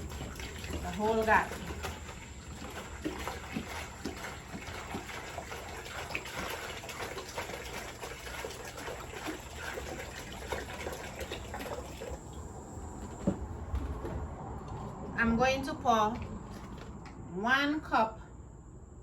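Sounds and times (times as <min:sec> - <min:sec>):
water pouring into a bucket: 0:00.0 - 0:13.3.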